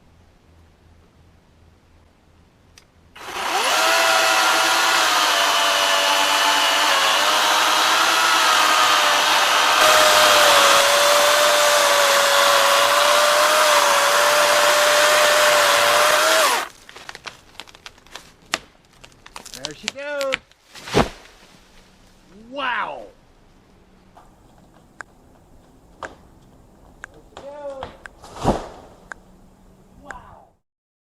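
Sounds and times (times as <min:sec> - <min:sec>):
electric chainsaw cutting wood: 0:03.2 - 0:16.7
sharp wood cracks: 0:03.2 - 0:21.3.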